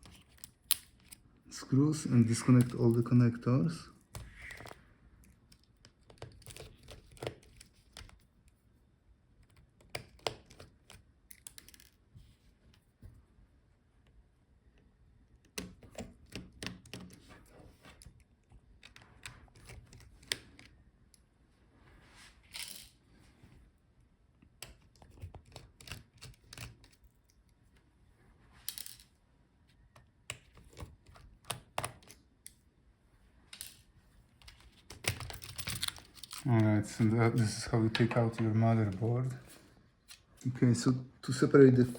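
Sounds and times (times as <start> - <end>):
laptop parts clicking and rattling: 0.0 - 1.3, 4.1 - 8.6, 9.4 - 12.1, 15.4 - 20.8, 24.4 - 27.6, 29.8 - 32.6, 33.5 - 36.6.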